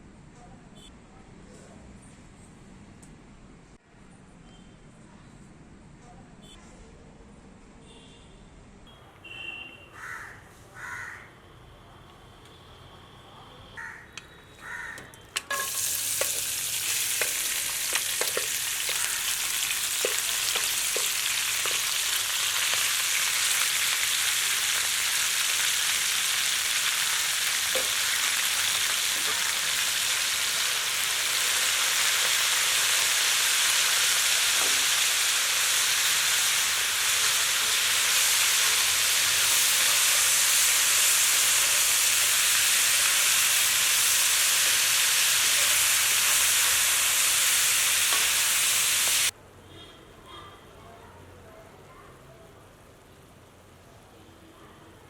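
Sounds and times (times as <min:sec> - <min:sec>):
food sizzling in hot oil: 0:15.4 - 0:49.3.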